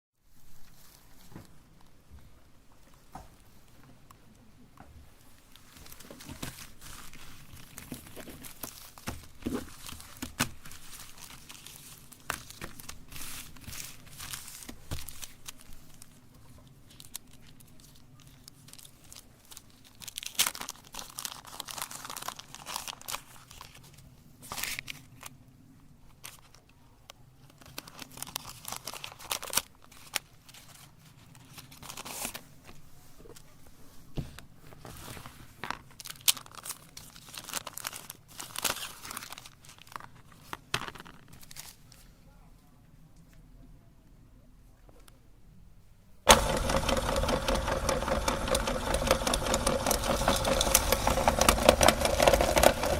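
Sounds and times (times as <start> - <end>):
wrappers crinkling and tearing: 5.5 - 25.4, 26.1 - 26.7, 27.4 - 32.5, 34.8 - 42.1, 46.3 - 52.9
chocolate cracking: 46.3 - 52.9.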